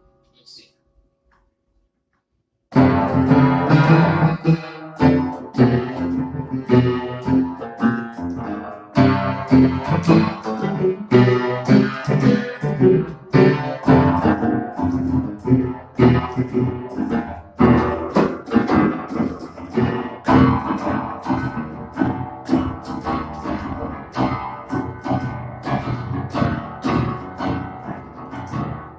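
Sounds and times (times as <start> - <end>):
keyboard chords and notes: 2.7 - 28.9.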